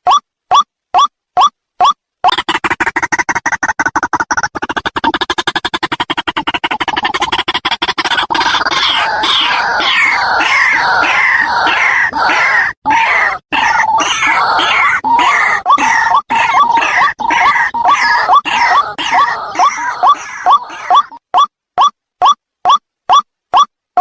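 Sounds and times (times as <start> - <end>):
waterhen calling harsh notes: 6.6 - 21.2.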